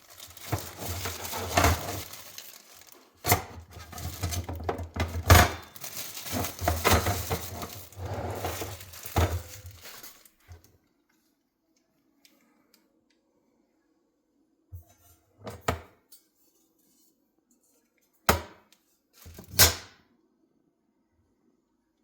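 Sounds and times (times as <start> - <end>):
objects thudding and knocking: 0.1 - 10.1.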